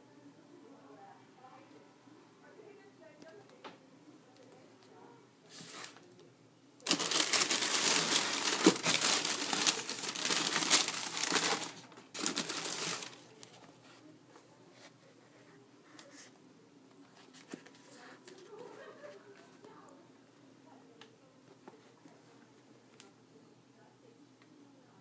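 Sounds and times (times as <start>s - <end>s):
packaging crinkling and rustling: 6.8s - 13.7s.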